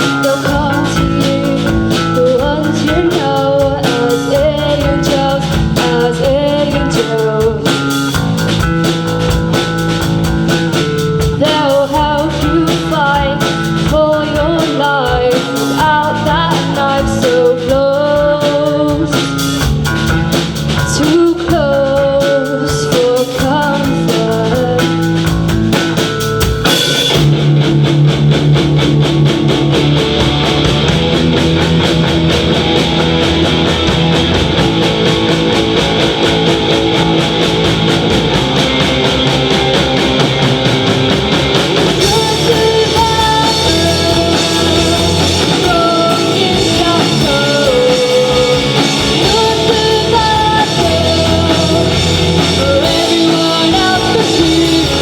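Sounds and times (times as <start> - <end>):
person singing: 0.0 - 8.0, 11.4 - 19.5, 20.8 - 25.3, 41.9 - 55.0
live rock band playing: 0.0 - 55.0.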